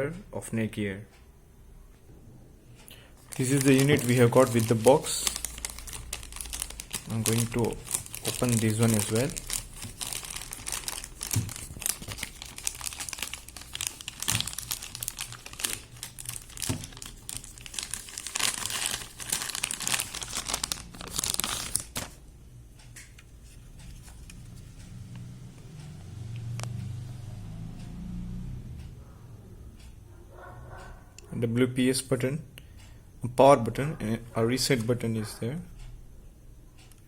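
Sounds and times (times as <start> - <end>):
packaging tearing and crinkling: 3.2 - 22.2.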